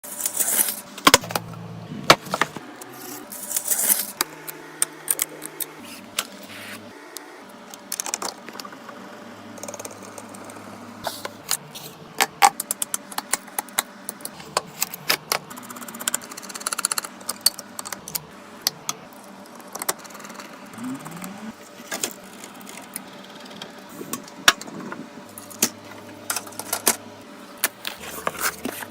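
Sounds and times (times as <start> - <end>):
packaging rustling: 27.5 - 28.9.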